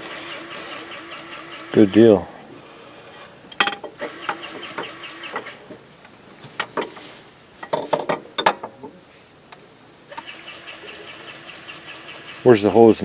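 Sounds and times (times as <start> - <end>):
metallic clicks and clanks: 3.5 - 5.7.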